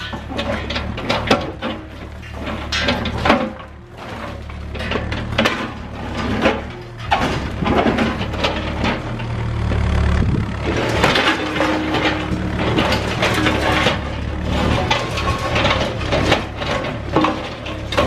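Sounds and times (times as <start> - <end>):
concrete debris crashing and scraping: 0.0 - 9.4, 10.5 - 18.0
diesel engine under load: 0.0 - 18.0.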